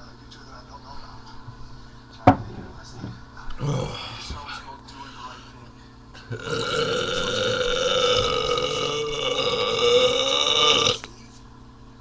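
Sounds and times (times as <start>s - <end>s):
man burping: 3.6s - 4.1s, 6.3s - 11.1s.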